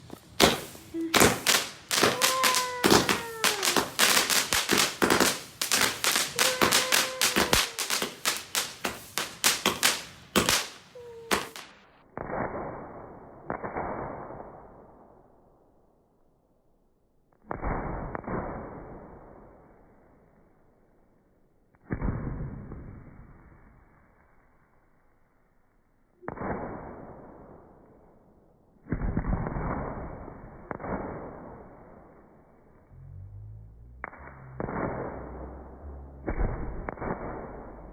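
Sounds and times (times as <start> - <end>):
firework bangs with trailing hiss: 0.0 - 15.1, 17.4 - 19.8, 26.2 - 28.1, 28.8 - 32.4, 34.0 - 37.9
firework cake rapid bangs: 0.3 - 14.2, 28.8 - 31.9, 34.0 - 37.9.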